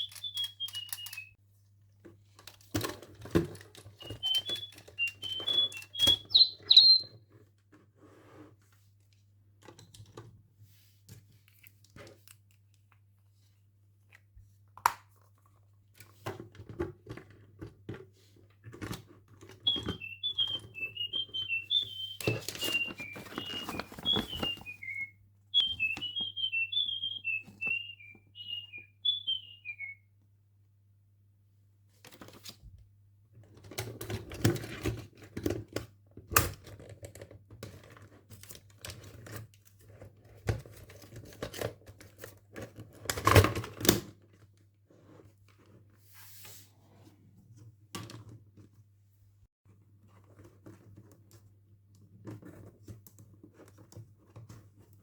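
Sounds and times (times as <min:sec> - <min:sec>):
electronic toy bird chirping: 0:00.0 - 0:01.3, 0:04.0 - 0:07.1, 0:19.7 - 0:30.0
packaging rustling and clicks: 0:00.0 - 0:01.3, 0:19.7 - 0:27.9.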